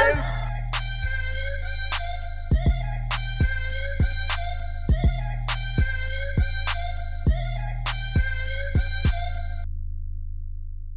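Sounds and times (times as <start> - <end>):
low bass note: 0.0 - 1.1
drum machine beat music: 0.0 - 9.5.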